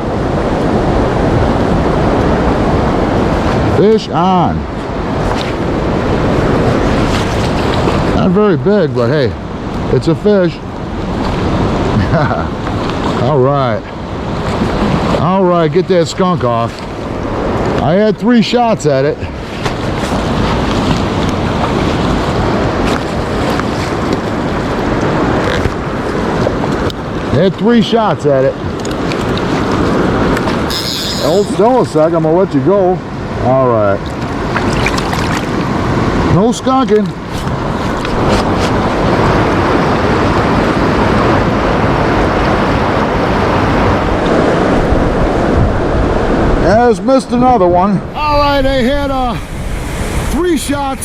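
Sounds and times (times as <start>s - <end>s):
creek water rushing: 0.0s - 51.0s
wind buffeting microphone: 0.0s - 51.0s.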